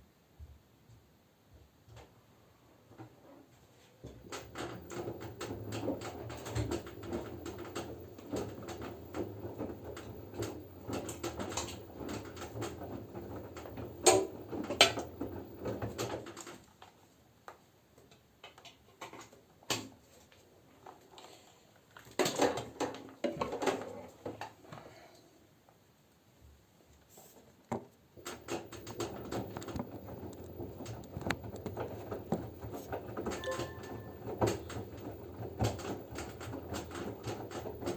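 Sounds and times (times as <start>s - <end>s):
laundry tumbling in washing machine: 4.0s - 16.7s, 22.0s - 24.5s, 28.2s - 37.9s.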